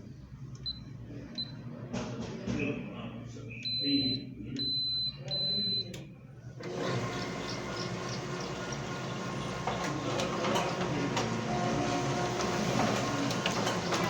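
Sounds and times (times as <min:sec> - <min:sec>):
high control panel beeps: 0:00.6 - 0:01.7, 0:03.5 - 0:06.2
copier running mechanically: 0:03.6 - 0:14.0.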